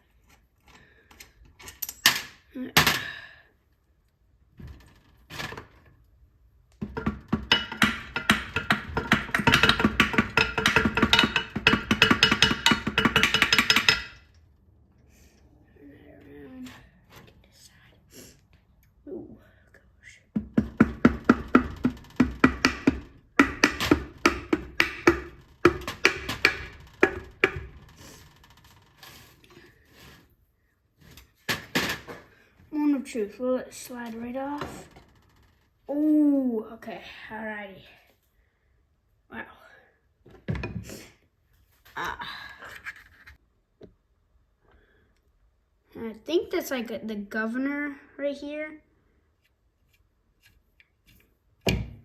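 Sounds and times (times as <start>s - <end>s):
rapid taps on engine parts: 6.8s - 14.2s.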